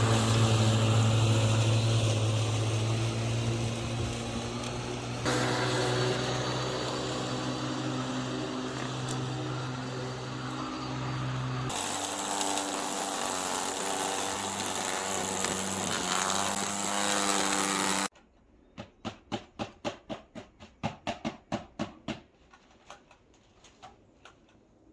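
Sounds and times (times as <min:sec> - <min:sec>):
electric garden tool motor whine: 0:00.0 - 0:18.1.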